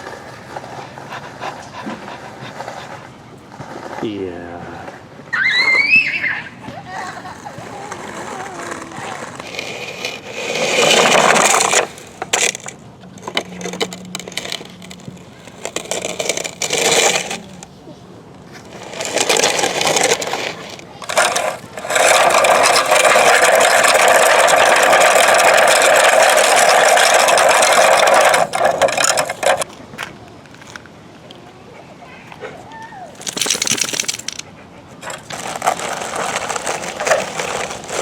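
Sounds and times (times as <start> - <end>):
sand scraping on metal toy truck: 6.9 - 17.7, 18.5 - 29.7, 33.2 - 38.0.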